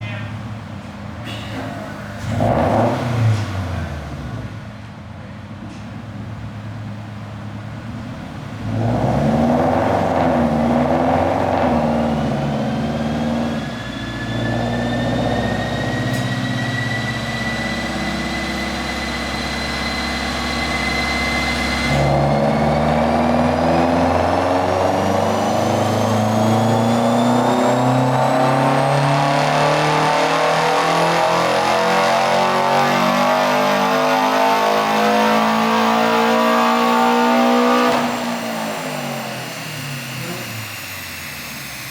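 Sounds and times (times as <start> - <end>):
car engine accelerating: 1.6 - 41.9
high whine: 9.6 - 41.9.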